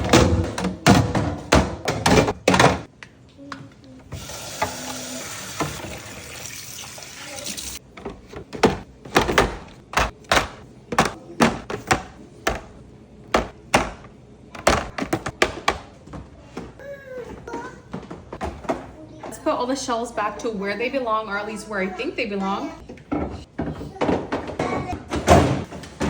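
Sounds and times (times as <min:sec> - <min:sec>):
containers knocking and clunking: 0:00.0 - 0:02.9, 0:07.9 - 0:16.6, 0:22.9 - 0:26.0.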